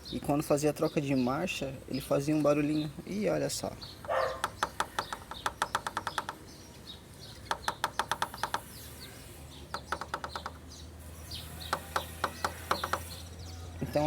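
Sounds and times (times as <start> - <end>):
birds chirping faintly: 0.0 - 14.0
loose pipe rattling knocks: 4.0 - 6.4, 7.5 - 8.7.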